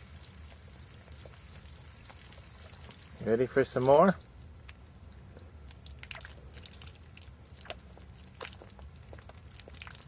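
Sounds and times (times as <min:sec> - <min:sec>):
koala drinking with wet slurps: 0:04.2 - 0:10.0.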